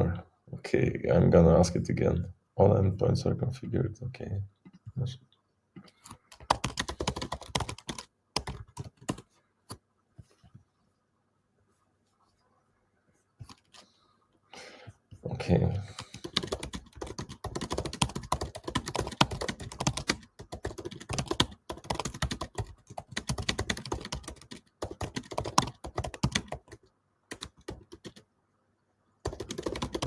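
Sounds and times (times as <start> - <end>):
fast typing on a keyboard: 6.2 - 9.2, 16.0 - 28.2, 29.2 - 30.0.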